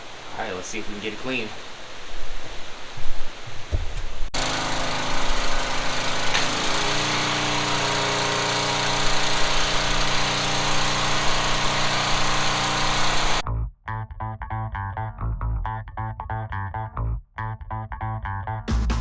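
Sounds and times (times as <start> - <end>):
pressure washer motor drone: 4.4 - 13.4.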